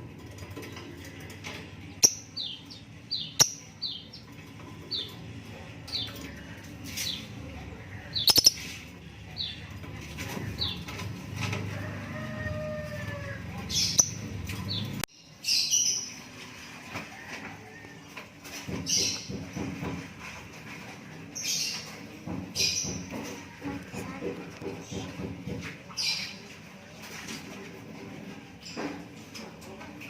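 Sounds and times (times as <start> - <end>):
lovebirds chirping: 7.9 - 9.7.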